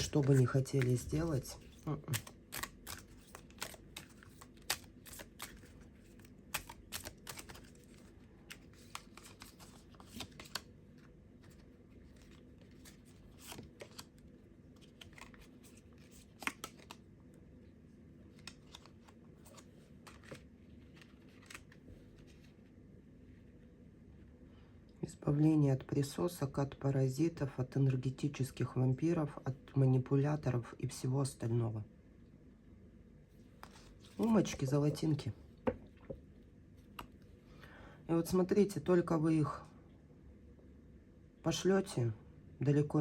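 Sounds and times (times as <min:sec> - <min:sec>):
cards being shuffled: 0:00.0 - 0:17.0, 0:18.3 - 0:22.6, 0:33.5 - 0:35.8.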